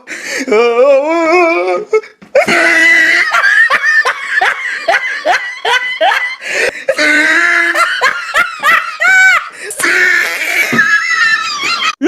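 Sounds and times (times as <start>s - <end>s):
person laughing hard: 2.4s - 12.0s.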